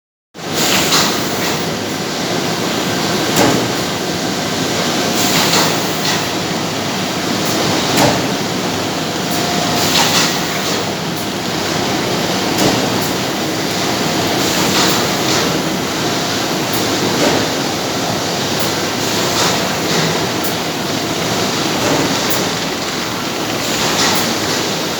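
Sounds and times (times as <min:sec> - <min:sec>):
production machine running: 0:01.6 - 0:24.9
short irregular clacks: 0:18.6 - 0:24.9.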